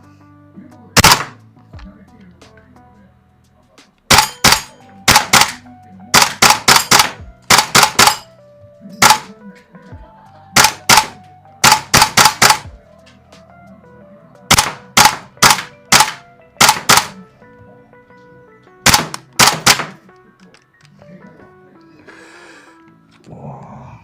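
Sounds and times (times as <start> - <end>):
background music: 0.0 - 24.0
airsoft gun shots: 1.0 - 1.4, 4.1 - 8.3, 9.0 - 9.3, 10.6 - 12.7, 14.5 - 17.2, 18.8 - 20.0.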